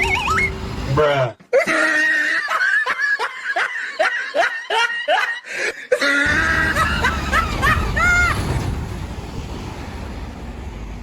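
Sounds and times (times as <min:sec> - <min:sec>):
person laughing rhythmically: 0:01.4 - 0:08.4.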